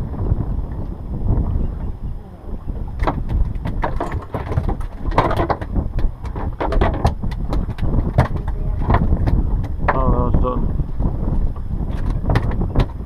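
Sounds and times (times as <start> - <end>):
wind rumble on microphone: 0.0 - 13.0
fishing gear knocking and clattering: 3.0 - 10.1, 11.9 - 13.0.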